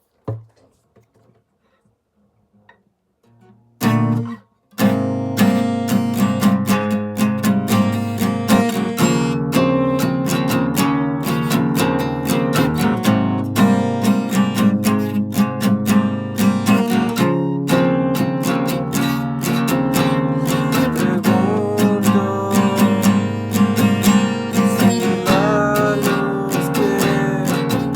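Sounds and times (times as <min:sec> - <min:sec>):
acoustic guitar strumming: 0:03.3 - 0:27.9.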